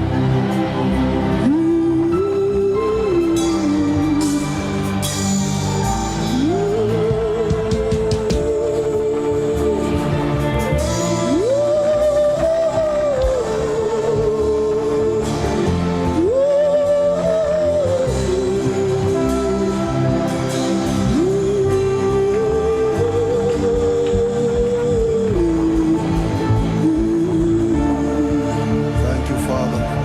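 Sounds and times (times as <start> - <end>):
band with guitar: 0.0 - 30.0
gospel singing melody: 0.0 - 30.0.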